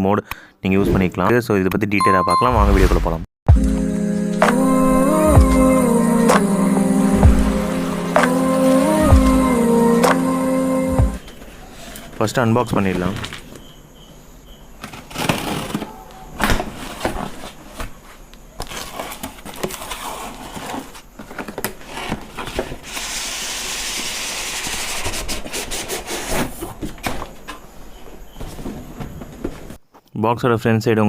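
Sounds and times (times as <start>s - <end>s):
steady scraping hiss: 22.8s - 26.8s.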